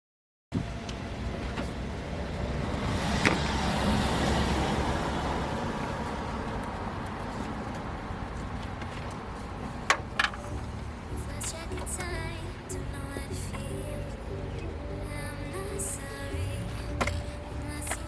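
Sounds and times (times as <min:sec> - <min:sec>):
car engine running: 0:10.2 - 0:18.0.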